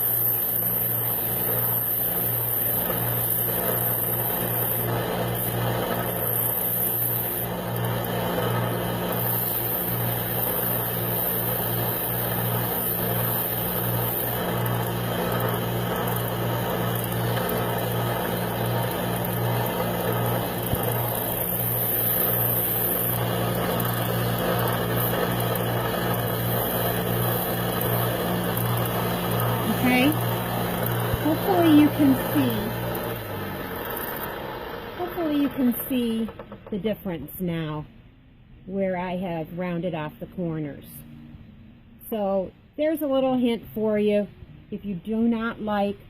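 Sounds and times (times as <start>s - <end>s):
belt sander grinding metal: 0.0s - 36.7s.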